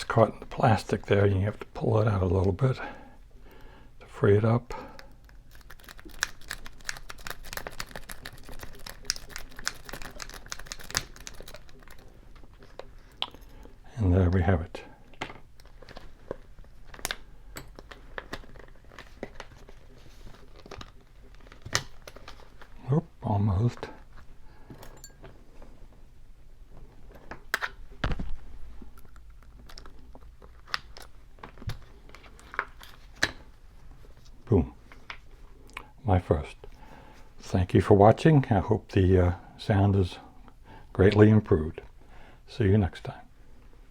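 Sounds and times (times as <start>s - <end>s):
plastic package crinkling: 5.0s - 13.1s.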